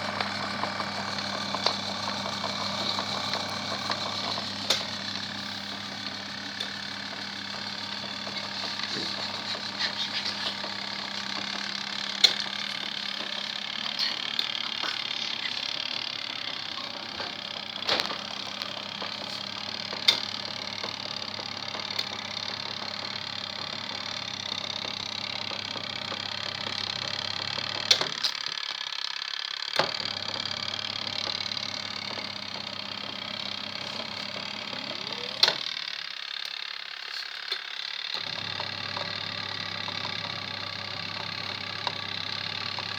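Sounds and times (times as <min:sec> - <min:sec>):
washing machine motor humming: 0:00.0 - 0:28.2, 0:29.8 - 0:36.0, 0:38.2 - 0:42.9
water and laundry churning: 0:07.0 - 0:22.2.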